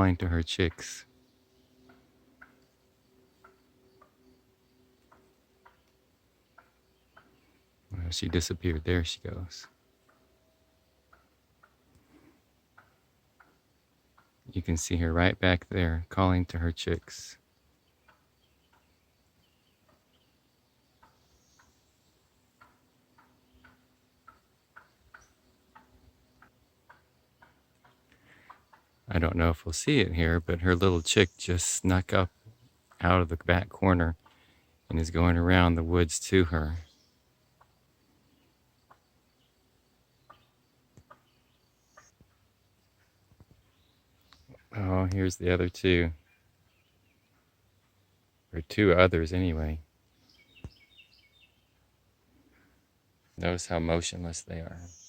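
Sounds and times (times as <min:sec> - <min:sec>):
turkey hen calling: 0:00.6 - 0:07.6, 0:08.2 - 0:14.4, 0:17.9 - 0:21.8, 0:22.5 - 0:29.1, 0:30.3 - 0:33.1, 0:34.1 - 0:34.8, 0:36.8 - 0:39.6, 0:40.2 - 0:45.1, 0:46.2 - 0:48.0.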